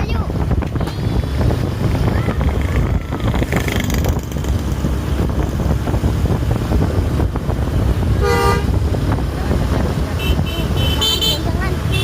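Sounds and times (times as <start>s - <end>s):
wind buffeting microphone: 0.0s - 10.8s
road traffic rumble: 0.0s - 12.0s
bus horn: 8.2s - 8.8s, 10.2s - 12.0s.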